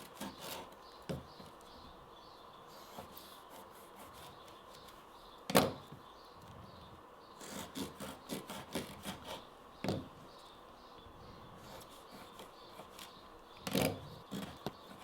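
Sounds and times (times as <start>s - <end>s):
knife sawing through rope: 0.0s - 0.8s, 2.8s - 4.5s, 7.4s - 9.5s.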